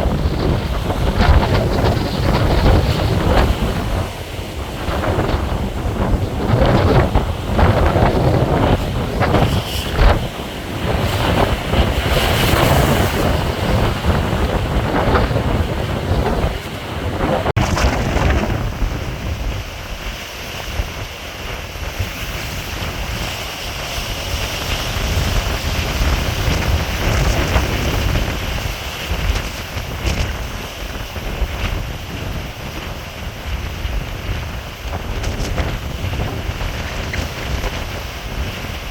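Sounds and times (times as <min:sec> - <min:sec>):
rough sea waves: 0:00.0 - 0:38.9
wind buffeting microphone: 0:00.0 - 0:38.9.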